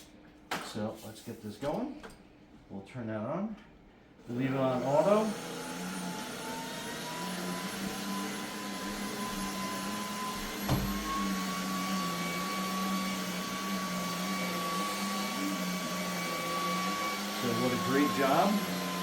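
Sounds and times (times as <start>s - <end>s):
stick vacuum running: 4.3s - 19.0s.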